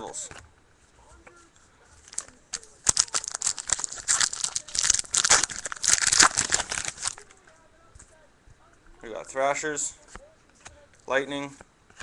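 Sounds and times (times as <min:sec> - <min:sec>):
wrapper tearing and crinkling: 0:02.0 - 0:07.4.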